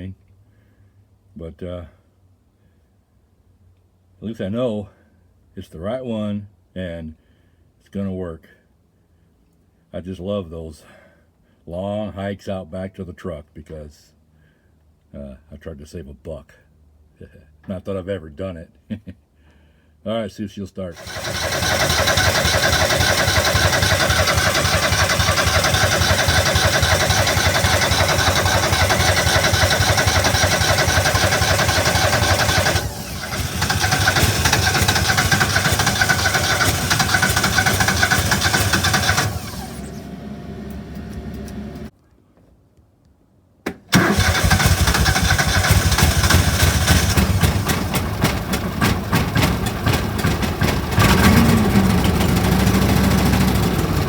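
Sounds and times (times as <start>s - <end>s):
engine starting and running roughly: 21.0s - 41.9s, 43.7s - 54.0s.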